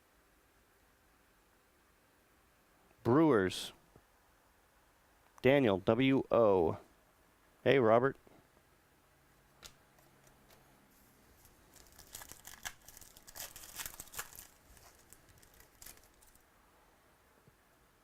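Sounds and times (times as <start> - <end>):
card packaging crinkling: 11.3 - 16.4.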